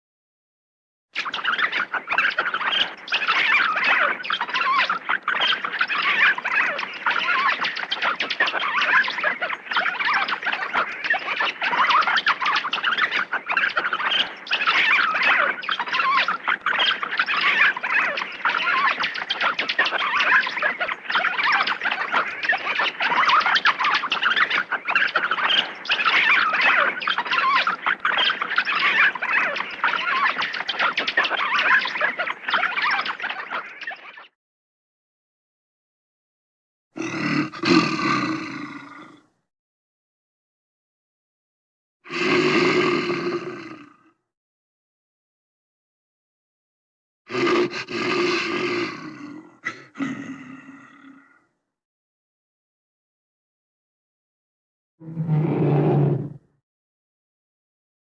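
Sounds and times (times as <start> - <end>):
small animals squeaking and chittering: 1.2 - 34.3, 37.0 - 39.2, 42.1 - 44.0, 47.3 - 51.3.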